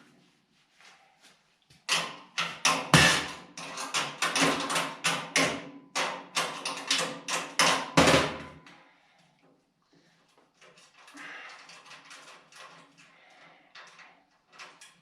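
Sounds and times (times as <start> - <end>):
metal parts clanking and knocking: 1.9 - 8.6.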